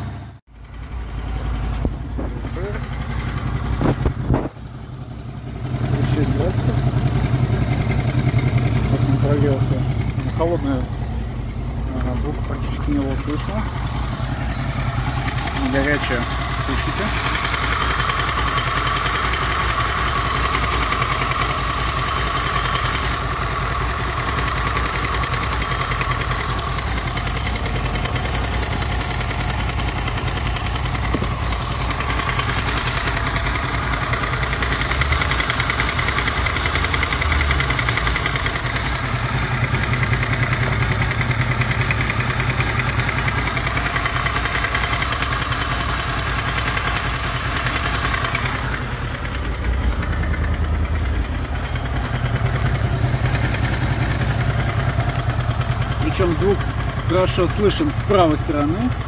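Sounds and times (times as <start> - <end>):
motorcycle engine idling: 0.0 - 59.0
metallic engine knock: 17.1 - 56.0.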